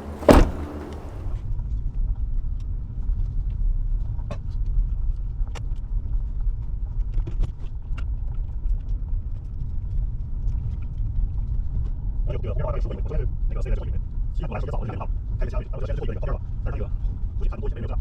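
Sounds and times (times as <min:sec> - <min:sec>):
light clicks and rattles: 0:00.0 - 0:01.3
vehicle engine and road rumble: 0:00.0 - 0:01.4.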